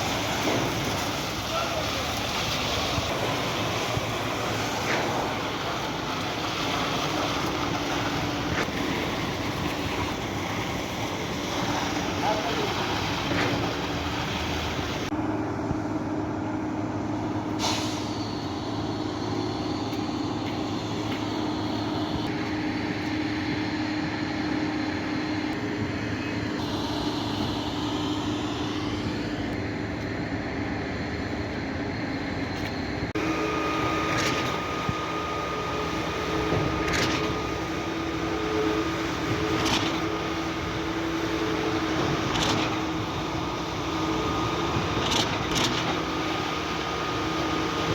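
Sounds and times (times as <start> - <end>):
heavy diesel truck engines running: 0.0 - 47.9.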